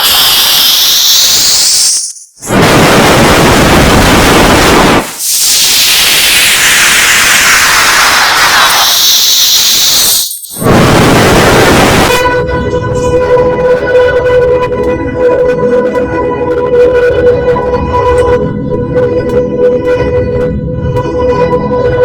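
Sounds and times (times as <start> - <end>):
harsh distorted hiss: 0.0 - 12.3.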